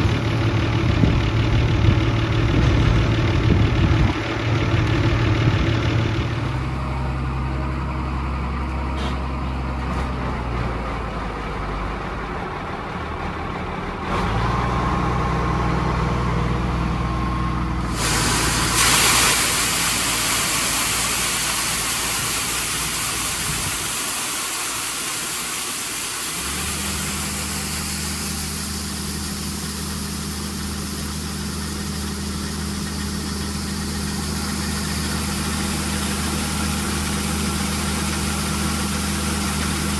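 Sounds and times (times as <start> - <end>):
combine harvester diesel engine: 0.0 - 39.9
steady hiss: 17.8 - 32.0.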